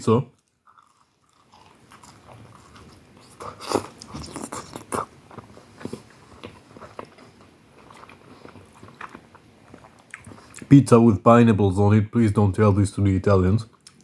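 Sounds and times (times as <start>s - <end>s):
crunchy pizza bites: 0.0s - 10.8s
person chewing: 0.3s - 10.7s.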